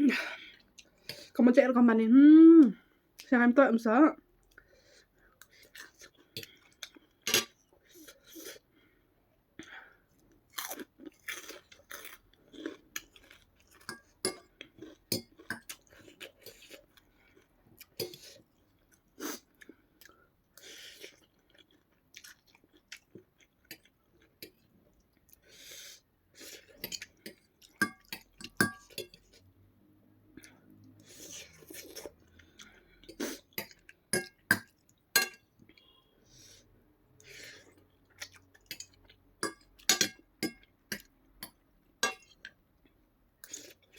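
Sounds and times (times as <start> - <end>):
food being chewed and crunched: 10.1 - 25.5, 37.2 - 40.2.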